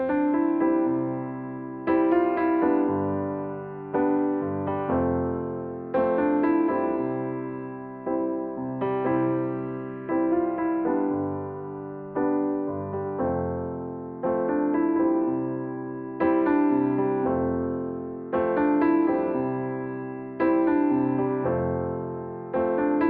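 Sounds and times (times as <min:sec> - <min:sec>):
piano chords: 0:00.0 - 0:23.0.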